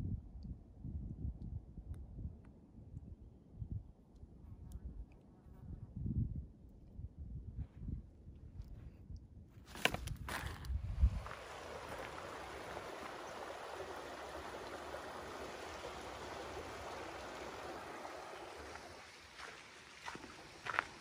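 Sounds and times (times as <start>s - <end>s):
footsteps on trail: 9.6s - 13.3s, 18.4s - 21.0s
mountain stream rushing: 11.0s - 21.0s.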